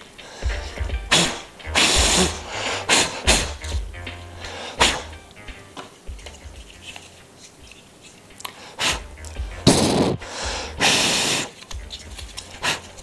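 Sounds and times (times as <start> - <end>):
hissing bursts of air: 0.2 - 5.2, 8.6 - 11.8.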